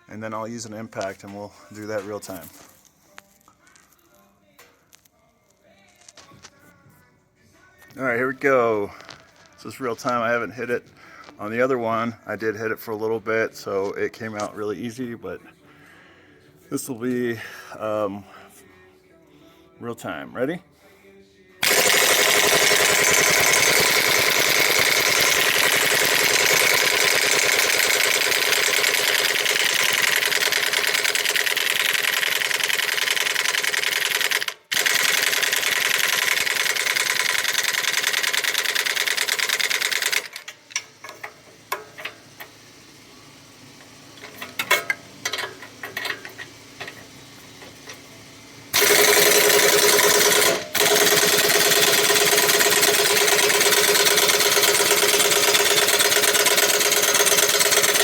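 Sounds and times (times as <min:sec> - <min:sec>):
impact wrench hammering: 0:21.6 - 0:42.5, 0:44.2 - 0:48.0, 0:48.7 - 0:58.0.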